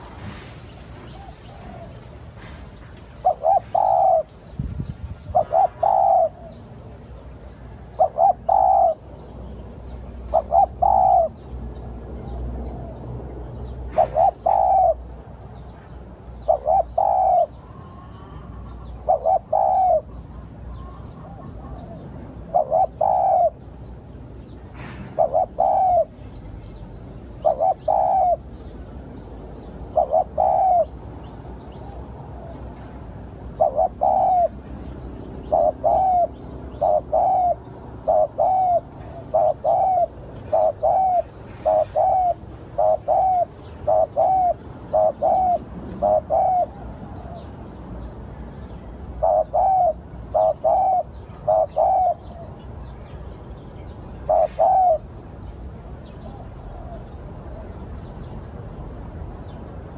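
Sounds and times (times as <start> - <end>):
dove cooing: 0.0 - 4.6, 5.2 - 6.8, 7.8 - 9.2, 10.3 - 11.4, 13.9 - 15.1, 16.4 - 23.8, 24.8 - 26.4, 27.4 - 28.6, 29.8 - 32.7, 33.4 - 47.8, 48.8 - 52.6, 54.2 - 55.2, 56.2 - 57.7
small birds chirping faintly: 0.0 - 59.9.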